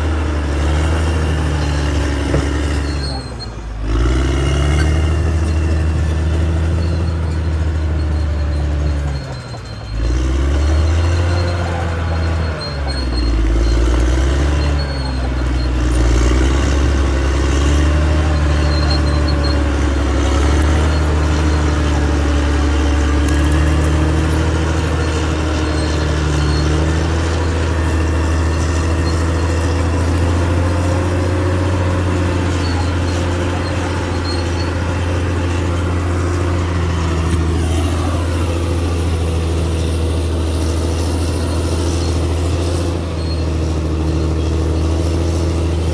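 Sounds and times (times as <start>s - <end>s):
bulldozer diesel engine droning: 0.0s - 45.9s.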